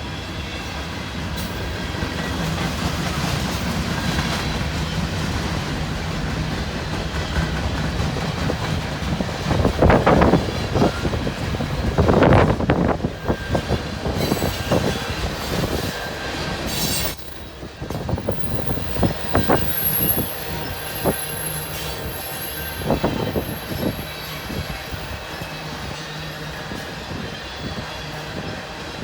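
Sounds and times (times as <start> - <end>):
train wheels clattering over joints: 1.4 - 28.9
high wheel squeal: 13.2 - 28.7.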